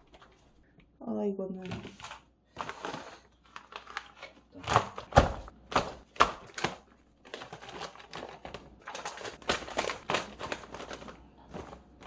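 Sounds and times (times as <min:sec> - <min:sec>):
packaging clicking and crinkling: 0:01.6 - 0:12.0.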